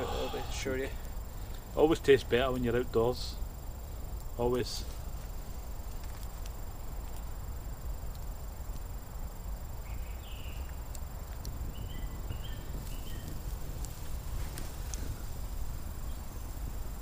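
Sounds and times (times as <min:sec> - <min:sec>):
steady low rumble: 0:00.0 - 0:09.6
campfire crackling: 0:00.0 - 0:17.0.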